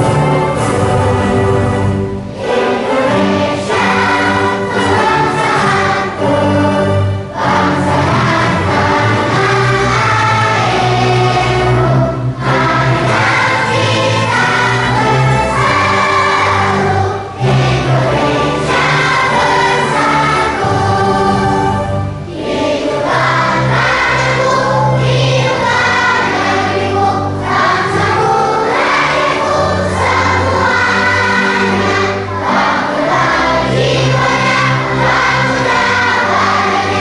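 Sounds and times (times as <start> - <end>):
choir singing an anthem: 0.0 - 37.0
instrumental accompaniment: 0.0 - 37.0.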